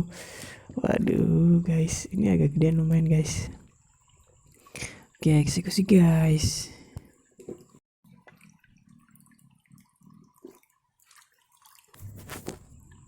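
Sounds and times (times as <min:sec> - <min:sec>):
water drips and small splashes: 0:02.0 - 0:06.0, 0:06.7 - 0:13.0.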